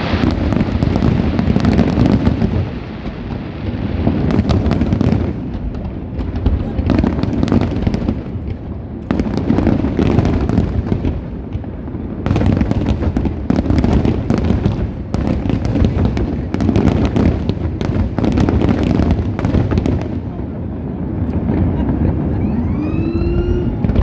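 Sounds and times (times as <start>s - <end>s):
fireworks booming: 0.0s - 24.0s
fireworks crackling: 0.0s - 24.0s.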